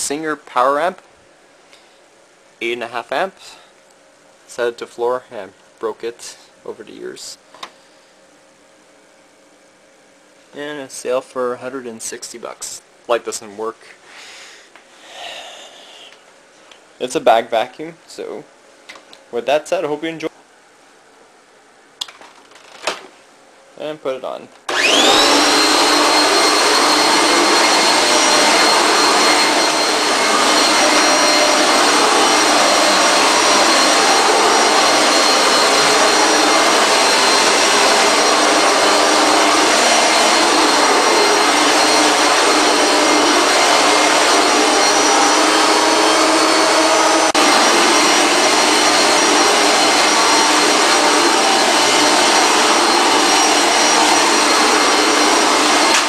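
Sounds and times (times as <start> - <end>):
vacuum cleaner running: 24.7 - 56.0.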